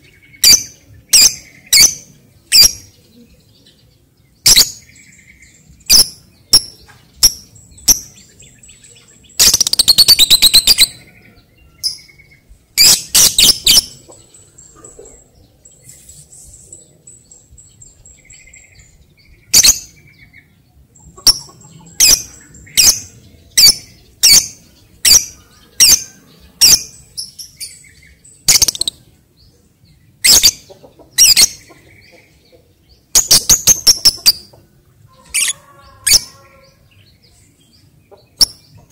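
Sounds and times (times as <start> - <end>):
lovebird chattering trill: 9.4 - 11.0, 12.8 - 14.0, 28.4 - 29.0, 33.1 - 34.5, 35.3 - 36.4
lovebird shrill chirps: 9.4 - 11.0, 28.4 - 29.0, 35.3 - 36.6.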